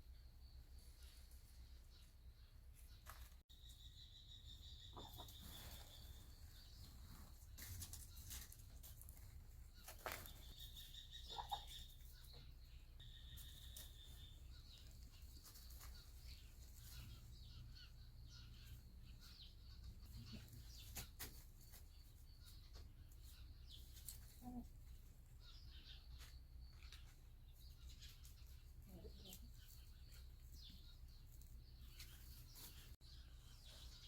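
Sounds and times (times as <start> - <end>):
birds chirping: 0.0 - 34.0
rustles: 5.0 - 11.0, 13.3 - 17.3, 19.9 - 34.0.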